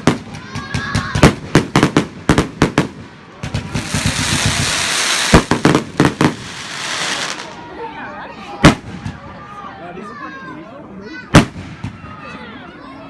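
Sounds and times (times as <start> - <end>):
firework bangs: 0.0 - 7.7, 8.6 - 9.3, 11.3 - 12.2
firework crackling hiss: 1.2 - 7.8.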